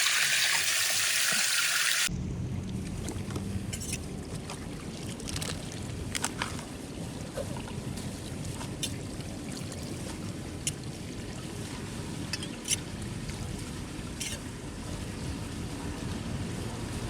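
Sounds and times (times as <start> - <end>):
water hissing through drain: 0.0 - 2.1
small clicks and splashes: 2.8 - 6.7, 7.3 - 10.9, 12.3 - 12.9, 14.2 - 14.4
rumbling water flow: 2.8 - 17.0.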